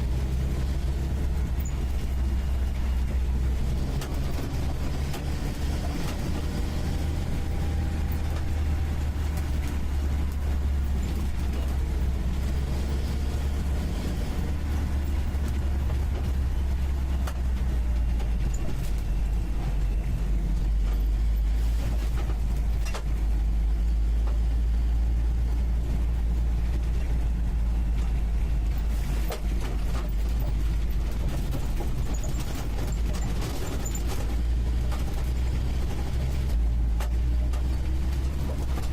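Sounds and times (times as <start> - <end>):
car engine droning in cab: 0.0 - 38.9.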